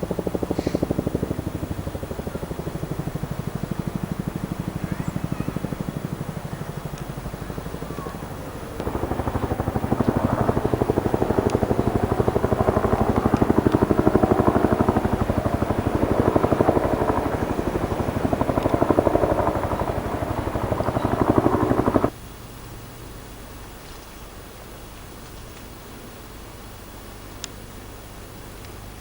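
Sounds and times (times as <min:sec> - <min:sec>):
heavy diesel engine throbbing: 0:08.2 - 0:22.1.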